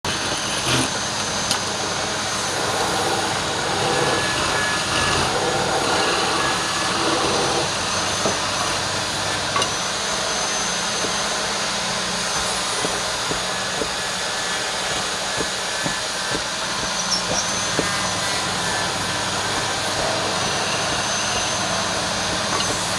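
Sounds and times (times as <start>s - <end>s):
wood lathe running: 0.0s - 22.9s
turning tool cutting wood: 0.1s - 22.9s.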